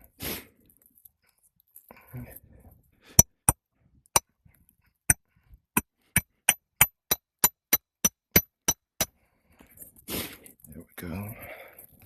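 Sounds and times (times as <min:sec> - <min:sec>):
hammer striking metal: 0:06.2 - 0:09.1.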